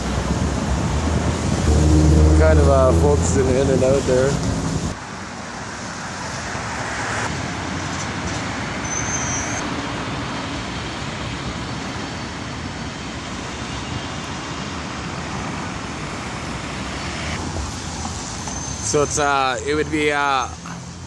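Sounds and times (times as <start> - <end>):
road traffic noise: 0.0 - 21.0.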